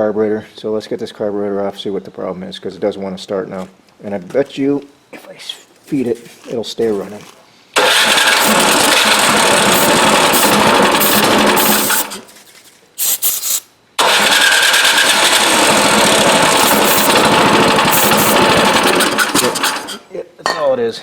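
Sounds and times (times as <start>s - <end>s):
engine sputter: 7.8s - 12.2s, 14.0s - 20.0s
snowblower engine running: 7.8s - 12.2s, 14.0s - 20.0s.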